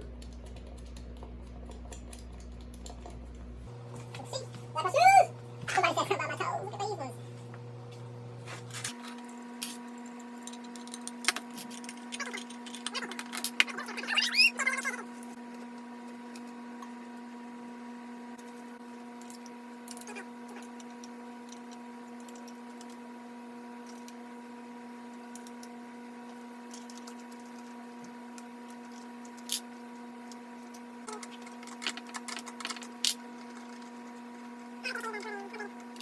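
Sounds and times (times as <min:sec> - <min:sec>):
background hum: 0:00.0 - 0:36.0.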